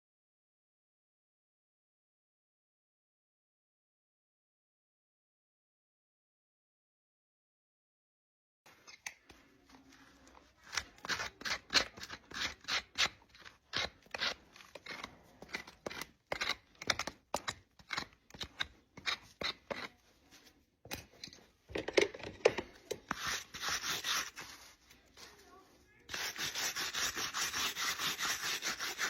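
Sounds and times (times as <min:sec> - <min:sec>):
tools scraping a hoof: 0:08.7 - 0:25.5, 0:26.1 - 0:29.0.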